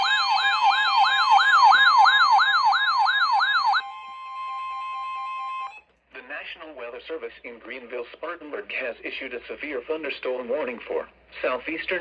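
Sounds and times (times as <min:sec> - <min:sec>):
electronic siren sweeping tone: 0:00.0 - 0:05.8.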